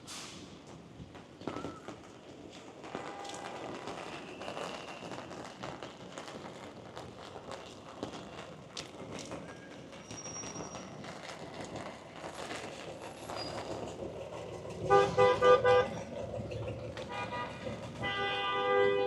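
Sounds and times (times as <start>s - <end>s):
street noise hiss: 0.0s - 19.0s
car horn honking: 14.9s - 15.9s, 17.1s - 19.0s.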